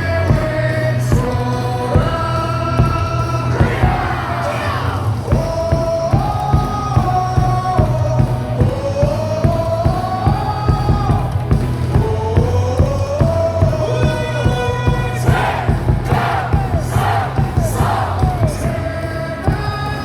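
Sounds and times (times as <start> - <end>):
crowd shouting together: 0.0 - 6.8, 14.9 - 19.0
cheer song over loudspeakers: 0.0 - 20.0
crowd singing along: 0.0 - 20.0
steady drumbeat: 0.0 - 20.0.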